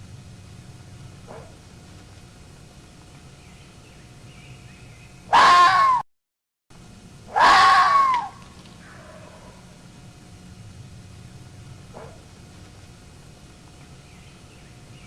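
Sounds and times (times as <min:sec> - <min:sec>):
fox screaming: 0:05.3 - 0:06.0, 0:07.3 - 0:09.6.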